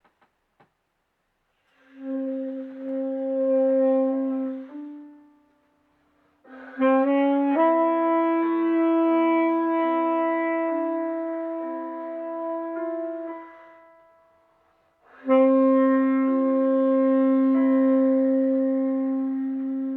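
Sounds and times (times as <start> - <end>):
tenor saxophone long held notes: 1.7 - 19.9.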